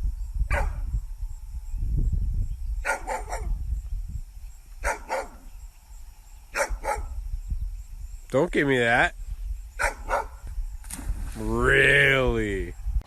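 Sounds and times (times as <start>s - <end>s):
dog barking: 0.5s - 0.8s, 2.8s - 3.6s, 4.8s - 5.4s, 6.5s - 7.2s, 9.8s - 10.4s.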